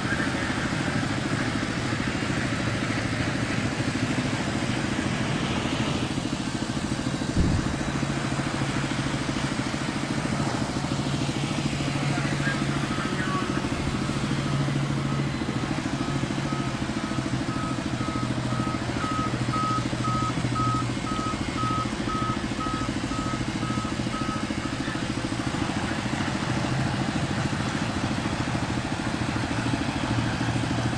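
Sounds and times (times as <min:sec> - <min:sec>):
heavy machinery engine running: 0:00.0 - 0:30.9
short electronic beeps: 0:12.3 - 0:25.0.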